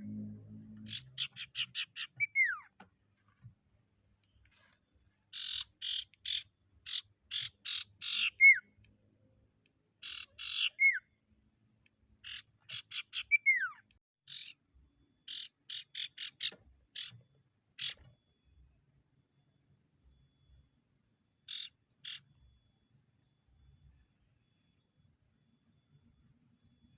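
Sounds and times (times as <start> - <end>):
bird chattering: 0.8 - 2.7, 5.3 - 8.6, 10.0 - 11.0, 12.2 - 14.6, 15.3 - 17.2, 21.5 - 22.2.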